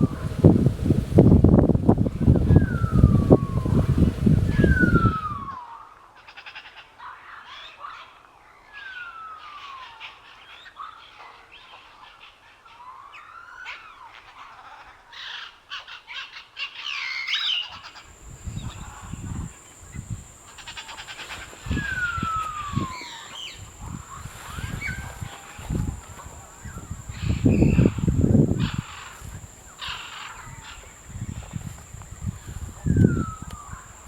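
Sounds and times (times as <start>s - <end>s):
birds chirping: 0.0s - 5.5s, 17.3s - 34.0s
bird whistle sliding down: 20.4s - 26.3s.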